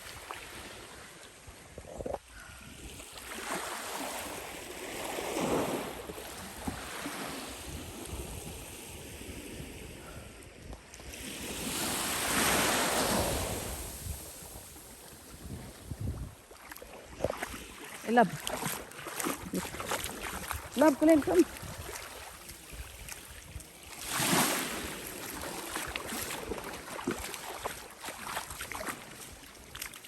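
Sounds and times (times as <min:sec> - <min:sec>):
waves washing onto beach: 0:00.0 - 0:30.0
wind on microphone: 0:05.4 - 0:18.6, 0:19.2 - 0:25.5.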